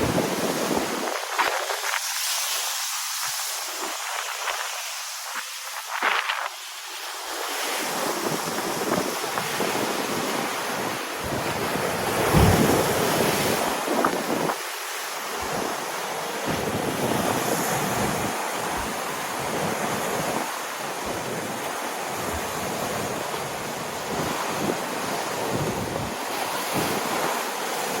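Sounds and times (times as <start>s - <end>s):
wind buffeting microphone: 0.0s - 2.0s, 7.9s - 14.6s, 15.4s - 27.4s
waves washing in: 0.0s - 28.0s.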